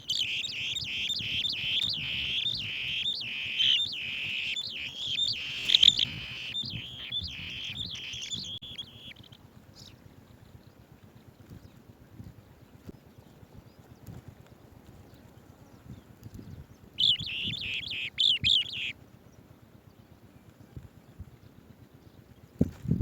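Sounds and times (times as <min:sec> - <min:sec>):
bee-eaters chirping: 0:00.0 - 0:09.4, 0:17.0 - 0:18.9.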